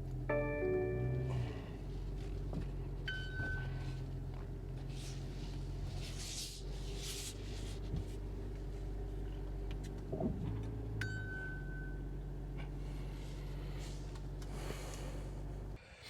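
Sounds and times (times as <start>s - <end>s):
car engine running: 0.0s - 15.8s.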